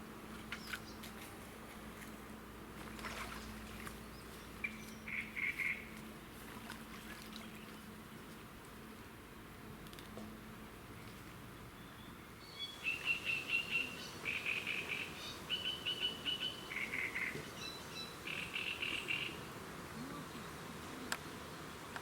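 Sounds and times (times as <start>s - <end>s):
songbird singing: 0.4s - 1.2s, 3.3s - 8.4s, 11.0s - 19.5s.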